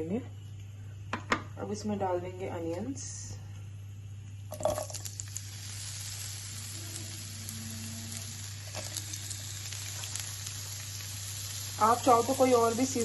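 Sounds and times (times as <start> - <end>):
onions clattering into pan: 4.5 - 5.4, 8.6 - 10.4
onions sizzling in oil: 4.5 - 13.0.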